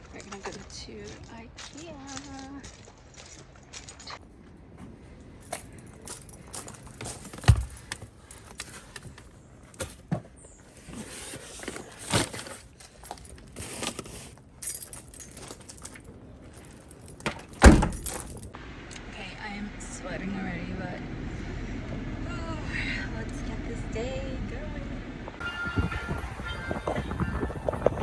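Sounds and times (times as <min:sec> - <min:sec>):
handling clicks and rustling: 0:05.3 - 0:18.6.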